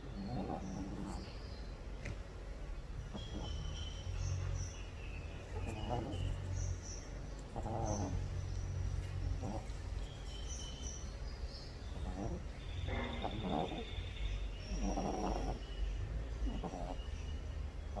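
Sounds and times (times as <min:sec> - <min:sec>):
dog snoring: 0:00.0 - 0:01.3, 0:03.1 - 0:04.7, 0:05.5 - 0:10.0, 0:11.8 - 0:18.0.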